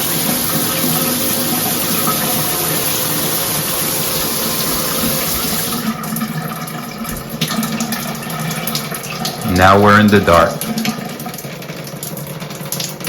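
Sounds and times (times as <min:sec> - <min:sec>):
shower spray hissing: 0:00.0 - 0:05.9
water trickling and dripping: 0:00.0 - 0:13.0.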